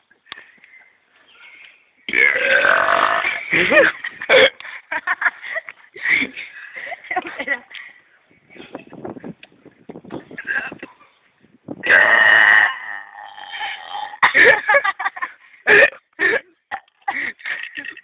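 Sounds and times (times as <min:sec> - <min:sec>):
person burping: 0:02.1 - 0:04.6, 0:11.8 - 0:14.4.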